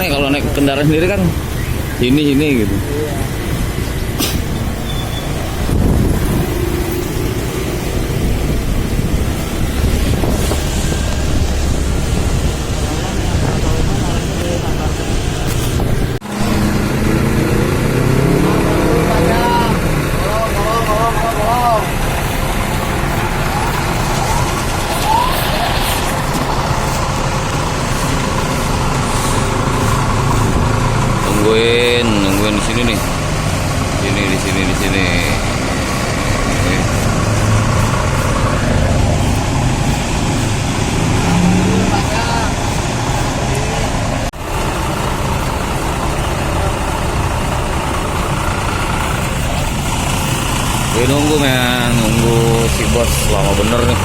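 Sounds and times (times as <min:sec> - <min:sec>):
road traffic passing: 0:00.0 - 0:54.0
vehicle engine idling: 0:00.0 - 0:54.0
short rising chirps: 0:04.5 - 0:05.6.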